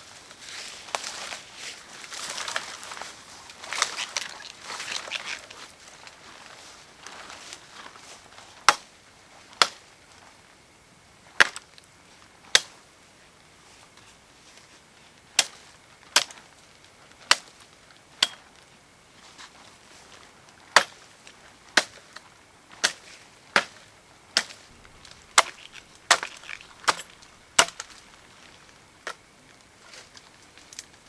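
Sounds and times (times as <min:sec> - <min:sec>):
wood chopping strikes: 0:24.4 - 0:28.8.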